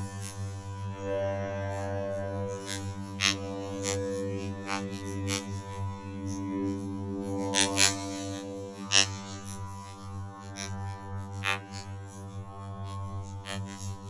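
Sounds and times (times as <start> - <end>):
low droning hum: 0.0 - 14.0.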